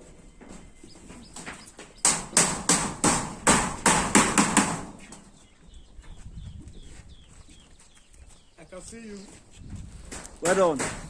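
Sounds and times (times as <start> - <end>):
hammer blows: 1.4 - 5.3.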